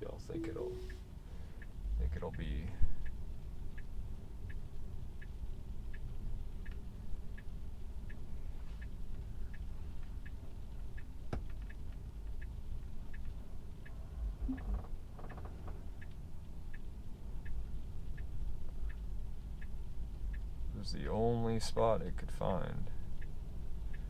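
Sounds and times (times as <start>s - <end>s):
turn signal ticking: 0.4s - 24.0s.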